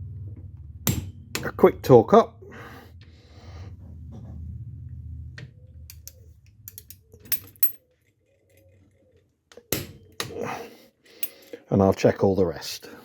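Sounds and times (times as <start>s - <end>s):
metallic clicks of hand tools: 5.9s - 7.8s, 11.2s - 11.6s.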